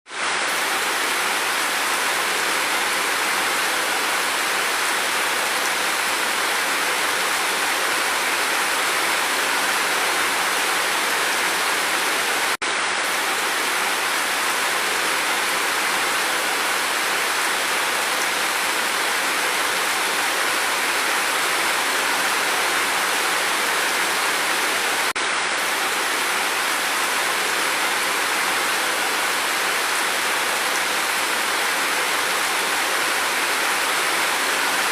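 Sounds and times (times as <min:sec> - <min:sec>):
steady rain hiss: 0:00.1 - 0:34.9.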